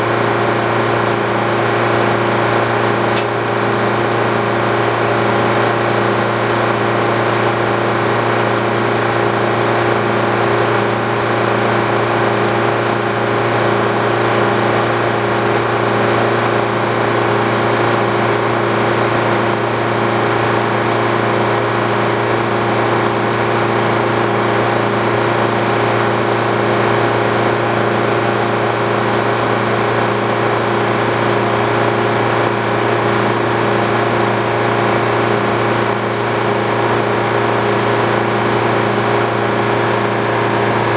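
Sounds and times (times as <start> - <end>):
sawmill machine hum: 34.6 - 40.9.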